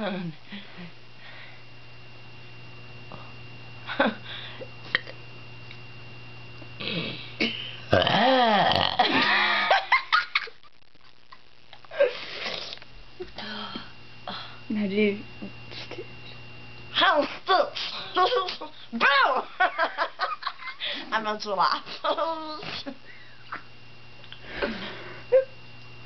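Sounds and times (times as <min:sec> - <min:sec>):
woman burping: 0:04.9 - 0:05.2, 0:06.8 - 0:09.3
throat sounds: 0:06.8 - 0:09.1.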